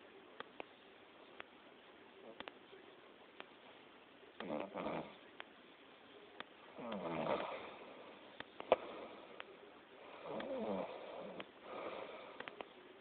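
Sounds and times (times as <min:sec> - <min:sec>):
person snoring: 0:04.4 - 0:05.2, 0:06.8 - 0:07.8, 0:10.1 - 0:12.4.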